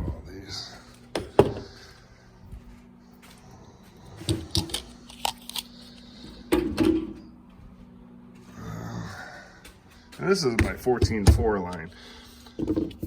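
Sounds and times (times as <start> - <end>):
faint steady hum: 0.0 - 13.0
power tools knocking on hard surface: 10.5 - 11.7.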